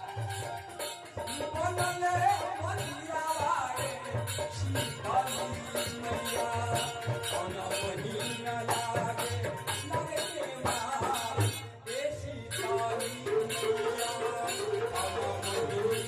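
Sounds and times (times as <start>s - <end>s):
held instrument melody: 0.0s - 3.0s
percussion and shaker beat: 0.0s - 11.8s, 12.5s - 16.0s.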